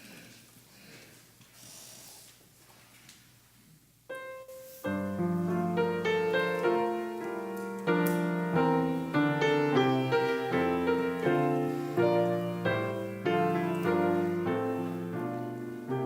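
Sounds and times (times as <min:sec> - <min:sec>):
piano playing slow chords: 0:04.1 - 0:16.0.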